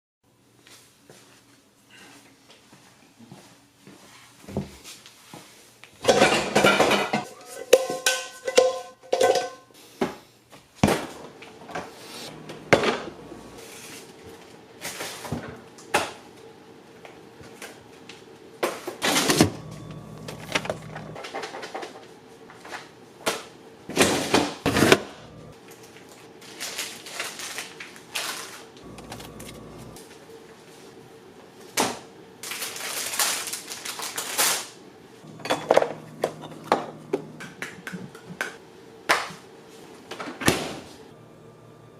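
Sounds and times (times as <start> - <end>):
dishes and utensils clattering: 6.0 - 9.7, 19.0 - 22.0, 35.3 - 38.6
kitchenware ringing when struck: 6.1 - 9.6, 35.3 - 37.2
faint steady hum: 12.1 - 13.8, 19.2 - 21.2, 28.8 - 31.5, 41.0 - 41.9.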